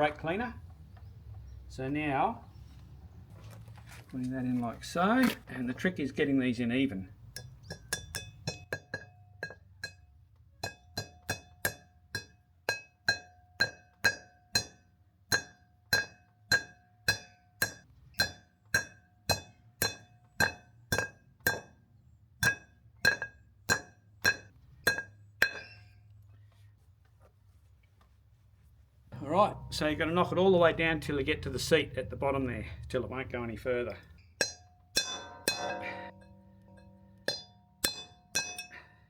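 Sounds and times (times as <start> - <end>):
hammer striking metal: 29.2 - 30.9, 34.4 - 38.9.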